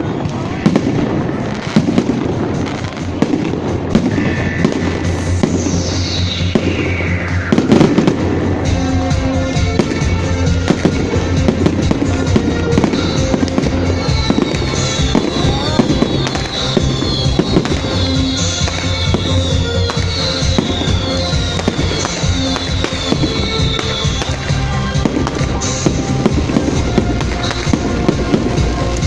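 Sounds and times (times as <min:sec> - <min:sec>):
fireworks cracking and banging: 0:00.0 - 0:29.0
music playing: 0:00.0 - 0:29.0
falling whistles: 0:04.0 - 0:08.4, 0:14.3 - 0:24.6.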